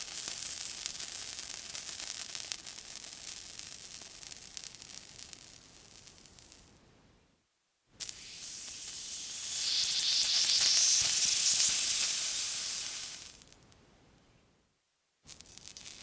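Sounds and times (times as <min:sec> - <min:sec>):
water sizzling on hot surface: 0:00.0 - 0:06.6, 0:08.0 - 0:13.6.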